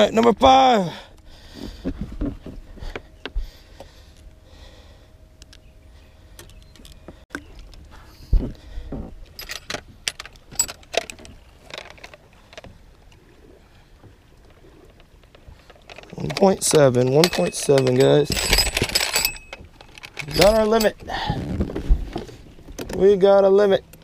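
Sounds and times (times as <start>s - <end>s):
fishing gear clicks and jangles: 9.2s - 12.7s, 15.3s - 21.2s.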